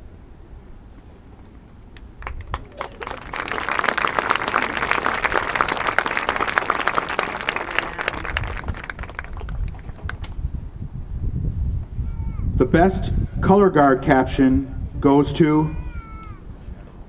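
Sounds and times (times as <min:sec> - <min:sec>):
crowd applauding: 0:02.2 - 0:10.3.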